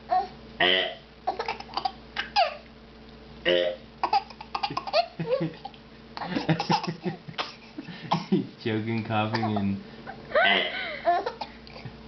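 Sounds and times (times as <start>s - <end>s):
baby giggling: 1.3s - 2.6s, 4.0s - 8.3s, 9.3s - 11.9s.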